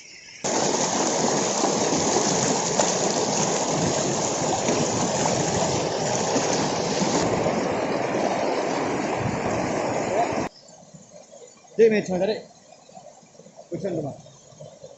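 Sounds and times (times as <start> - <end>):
waterfall rushing: 0.4 - 10.5.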